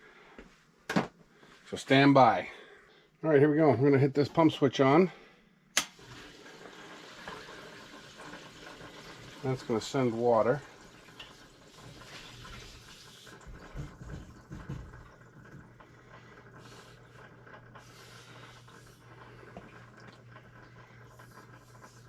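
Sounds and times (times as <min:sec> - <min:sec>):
water pump humming: 0:05.8 - 0:22.0.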